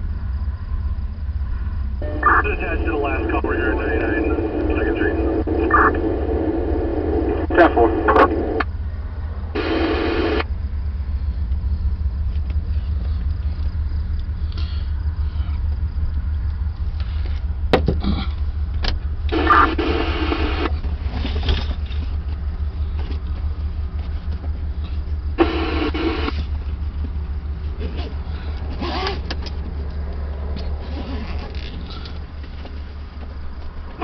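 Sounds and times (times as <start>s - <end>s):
steady low rumble: 0.0s - 34.0s
radio static bursts: 2.0s - 8.6s, 9.6s - 10.5s, 19.3s - 20.8s, 25.4s - 26.5s.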